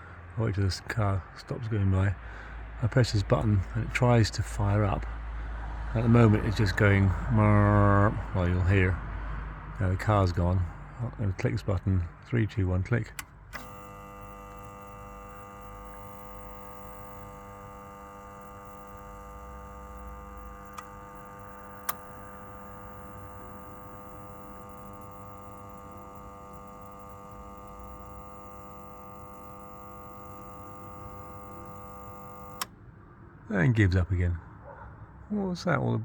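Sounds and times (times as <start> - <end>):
sharp clicks: 13.1 - 32.7
boiler burner humming: 13.2 - 32.7.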